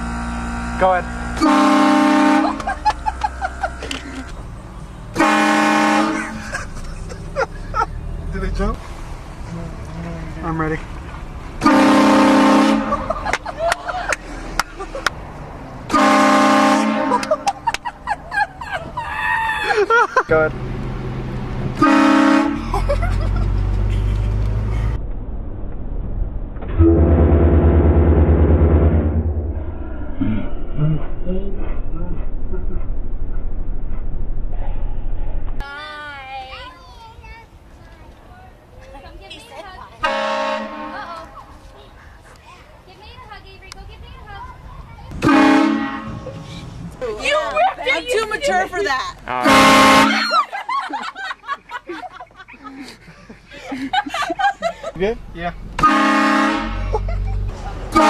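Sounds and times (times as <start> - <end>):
air horn chord blasts: 0.6 - 2.7, 5.2 - 6.4, 11.6 - 13.1, 15.9 - 17.4, 21.8 - 22.6, 26.7 - 29.5, 40.0 - 41.0, 45.2 - 46.2, 49.4 - 50.2, 55.8 - 56.9
low pulsing drone: 24.6 - 35.6.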